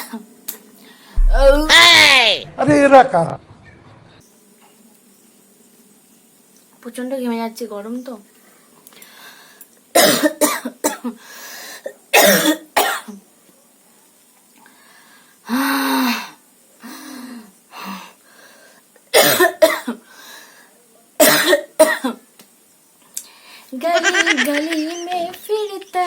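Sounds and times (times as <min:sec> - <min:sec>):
woman coughing: 0:10.0 - 0:11.1, 0:12.2 - 0:13.1, 0:19.2 - 0:20.0, 0:21.2 - 0:22.2.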